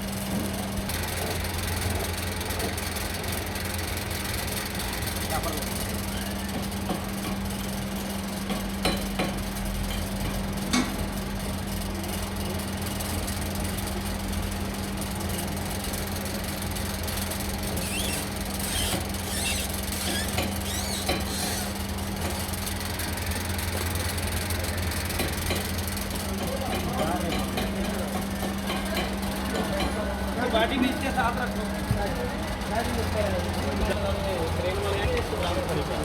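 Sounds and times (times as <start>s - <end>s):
steady machine hum: 0.0s - 36.0s
faint high squeaks: 17.8s - 21.8s.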